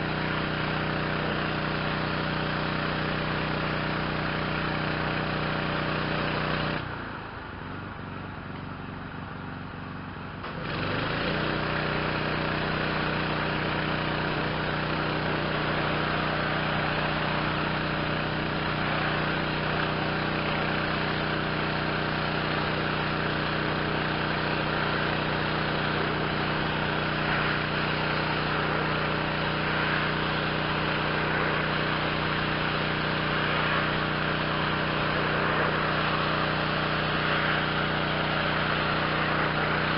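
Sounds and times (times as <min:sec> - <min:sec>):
pressure washer engine running: 0:00.0 - 0:39.9
high-pressure spray hissing: 0:24.7 - 0:39.9.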